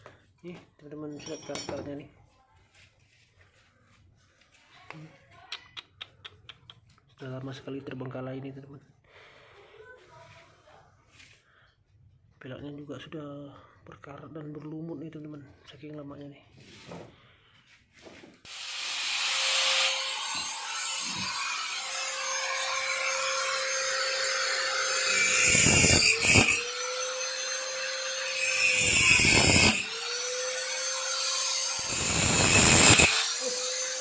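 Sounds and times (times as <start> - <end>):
power tool grinding metal: 18.5 - 34.0.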